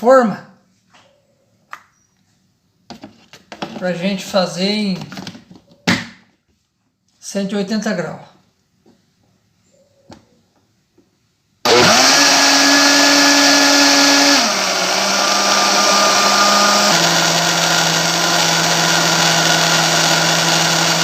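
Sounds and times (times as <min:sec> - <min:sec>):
blender motor running: 0:11.6 - 0:21.0.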